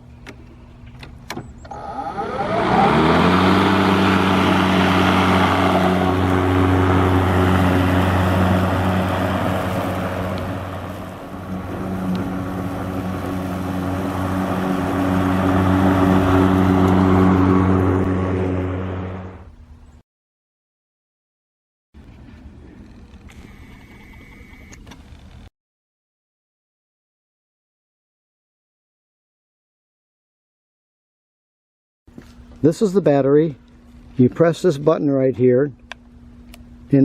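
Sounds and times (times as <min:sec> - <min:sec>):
electric lawnmower motor whining: 0:00.4 - 0:19.6, 0:22.0 - 0:25.5.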